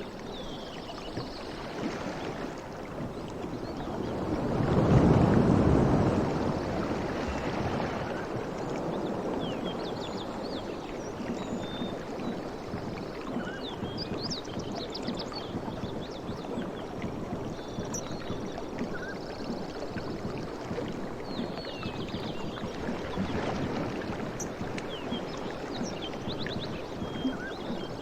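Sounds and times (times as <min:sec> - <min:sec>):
ocean waves washing in: 0:01.3 - 0:28.0.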